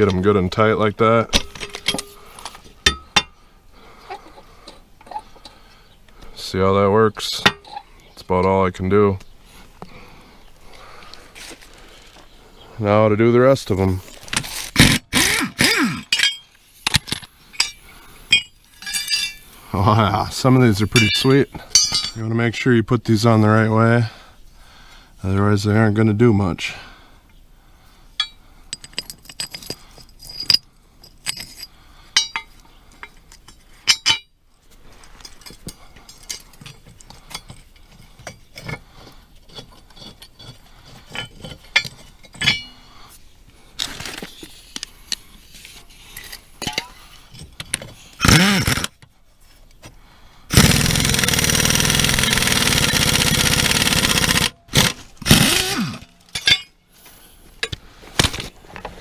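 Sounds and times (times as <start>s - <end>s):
metal parts clinking: 1.2s - 3.4s, 15.5s - 19.6s, 20.7s - 22.2s, 28.2s - 34.4s, 39.5s - 42.9s, 43.8s - 49.0s, 50.5s - 56.8s
power tool running: 14.8s - 16.0s, 48.2s - 49.0s, 50.5s - 56.1s.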